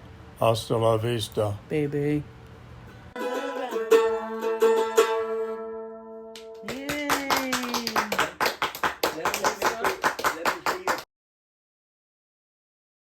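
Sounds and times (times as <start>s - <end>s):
mandolin playing: 3.2s - 6.7s.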